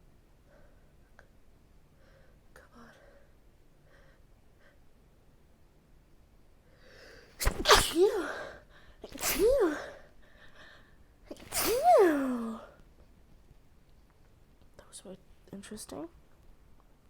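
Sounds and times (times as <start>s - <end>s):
breath drawn in: 6.8s - 10.0s, 11.3s - 12.5s
person sneezing: 7.4s - 10.1s, 11.3s - 12.7s.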